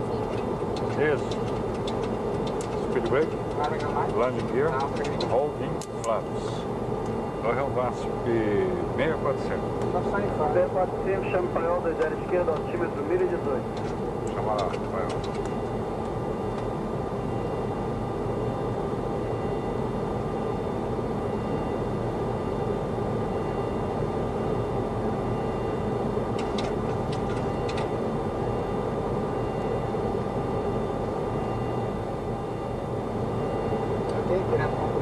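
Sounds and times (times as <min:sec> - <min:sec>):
airflow and engine noise: 0:00.0 - 0:35.0
faint steady tones: 0:00.0 - 0:35.0.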